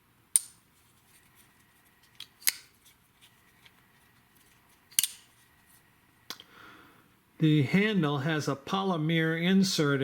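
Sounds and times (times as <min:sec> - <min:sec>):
folding knife clicking: 0:00.4 - 0:00.6, 0:02.2 - 0:02.7, 0:04.9 - 0:05.3
folding knife snapping: 0:00.4 - 0:00.6, 0:02.1 - 0:02.7, 0:04.9 - 0:05.3.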